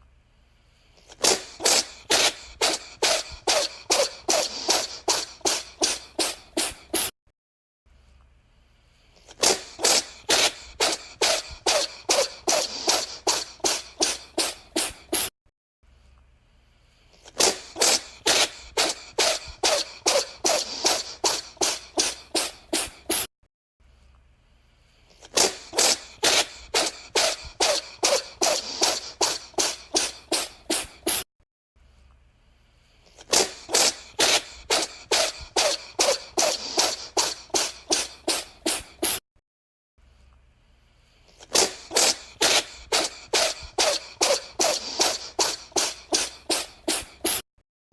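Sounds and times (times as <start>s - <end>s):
cat sneezing: 1.0s - 7.1s, 9.2s - 15.3s, 17.2s - 23.3s, 25.1s - 31.3s, 33.1s - 39.2s, 41.3s - 47.4s.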